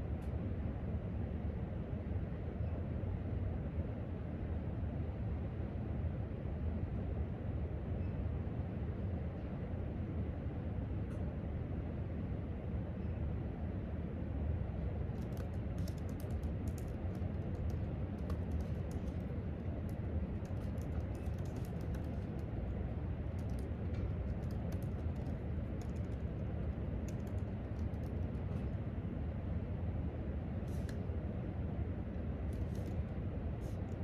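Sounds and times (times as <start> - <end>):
low room hum: 0.0 - 34.0
laptop keyboard typing: 15.1 - 28.8.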